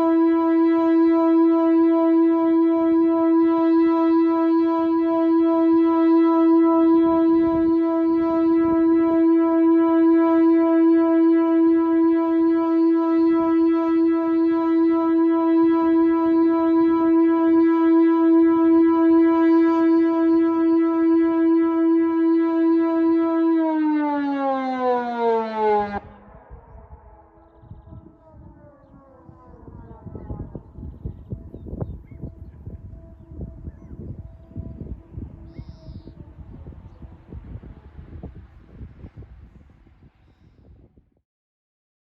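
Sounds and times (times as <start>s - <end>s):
electronic siren steady tone: 0.0s - 40.7s.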